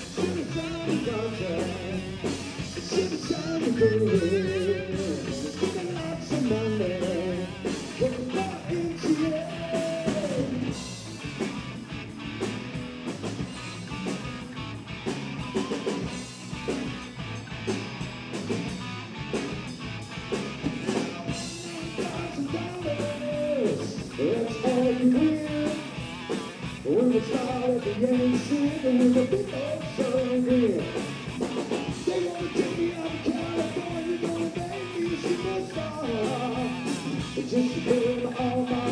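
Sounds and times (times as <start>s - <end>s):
person singing: 0.0s - 10.7s, 21.3s - 25.9s, 26.8s - 31.1s, 31.9s - 38.9s
drum kit: 0.0s - 38.9s
electric guitar: 0.0s - 38.9s.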